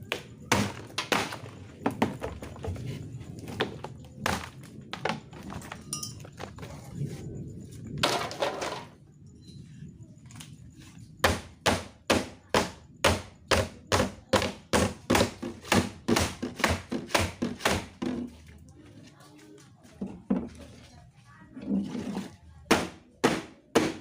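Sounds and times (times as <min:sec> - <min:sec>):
metal strikes on refrigerator cabinet: 0:11.2 - 0:18.0, 0:22.7 - 0:24.0.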